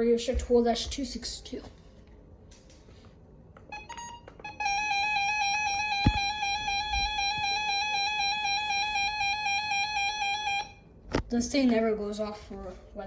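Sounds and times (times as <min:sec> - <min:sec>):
buzzy electronic alarm tone: 0:03.8 - 0:10.8
thump: 0:06.0 - 0:07.1.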